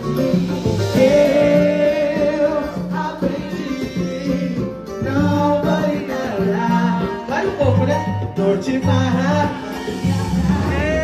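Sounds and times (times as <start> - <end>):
hand percussion: 0.0 - 11.0
live band playing: 0.0 - 11.0
person singing: 0.8 - 11.0.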